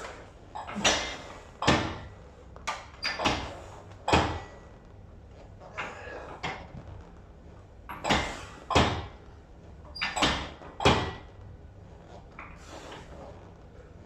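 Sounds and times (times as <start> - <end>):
exercise machine clunking: 0.0 - 4.8, 5.7 - 7.0, 7.9 - 9.2, 9.9 - 11.5.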